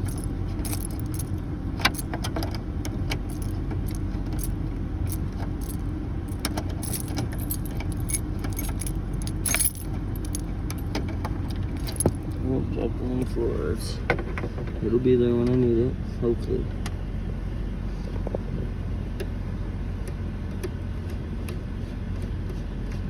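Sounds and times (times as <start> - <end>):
car engine idling: 0.0 - 13.9.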